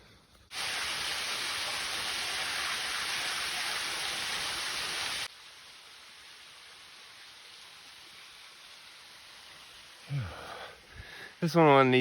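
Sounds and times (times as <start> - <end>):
small waterfall rushing: 0.5 - 11.6.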